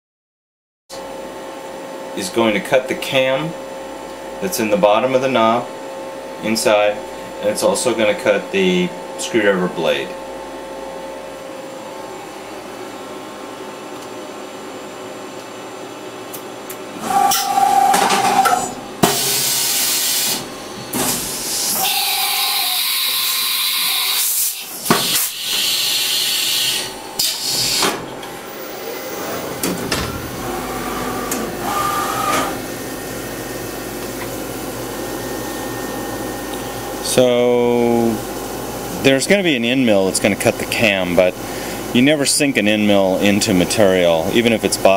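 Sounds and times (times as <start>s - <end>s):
milling machine humming: 10.2s - 44.9s.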